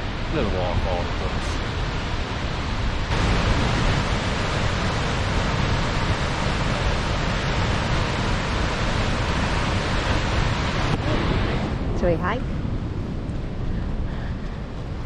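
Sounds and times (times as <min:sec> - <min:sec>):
waterfall rushing: 0:00.0 - 0:11.8.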